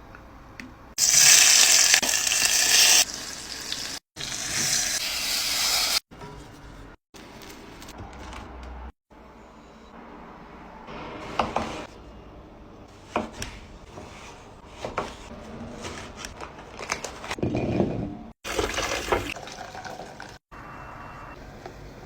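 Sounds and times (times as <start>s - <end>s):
liquid pouring into a pot: 18.5s - 20.4s.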